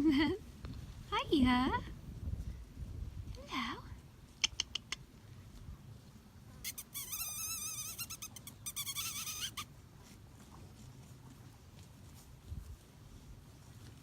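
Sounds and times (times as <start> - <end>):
high wavering squeak: 6.7 - 9.6.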